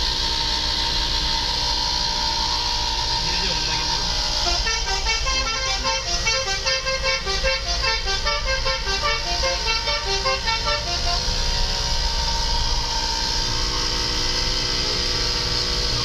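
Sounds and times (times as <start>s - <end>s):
vehicle engine and road rumble: 0.0s - 16.0s
multi-tone air horn melody: 4.2s - 13.9s.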